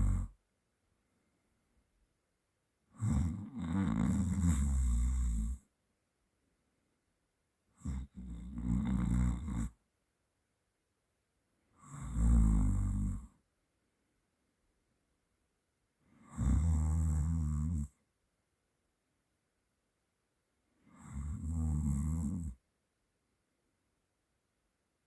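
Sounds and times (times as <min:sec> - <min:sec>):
person snoring: 0:00.0 - 0:00.4, 0:03.0 - 0:05.6, 0:07.8 - 0:09.8, 0:11.8 - 0:13.3, 0:16.1 - 0:18.0, 0:20.8 - 0:22.6.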